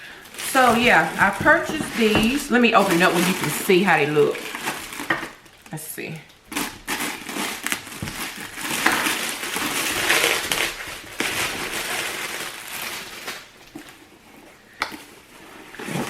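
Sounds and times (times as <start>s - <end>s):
packaging being torn open: 6.5s - 13.5s.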